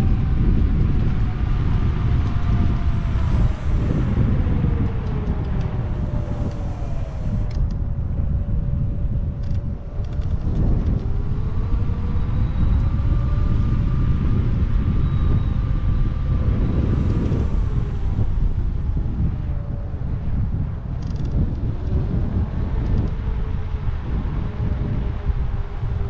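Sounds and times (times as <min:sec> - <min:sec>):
wind buffeting microphone: 0:00.0 - 0:26.0
electric motor whine: 0:00.3 - 0:07.7, 0:10.0 - 0:19.5.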